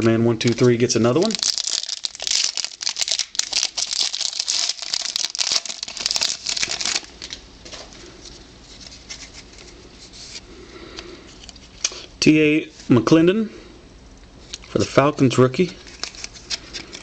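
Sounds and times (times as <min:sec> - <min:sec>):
wrapper crinkling and tearing: 0:00.4 - 0:07.4.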